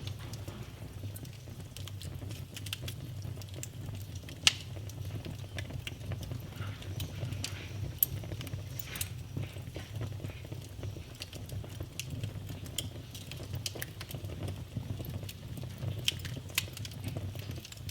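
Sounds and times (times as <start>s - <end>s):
fire crackling and popping: 0.0s - 17.9s
fire flames rumbling: 0.0s - 17.9s.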